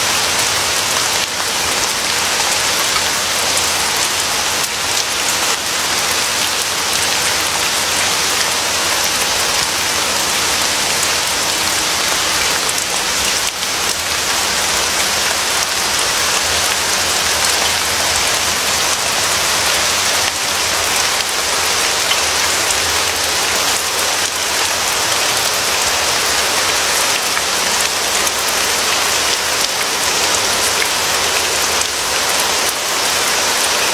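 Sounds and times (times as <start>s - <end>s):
steady rain: 0.0s - 33.9s.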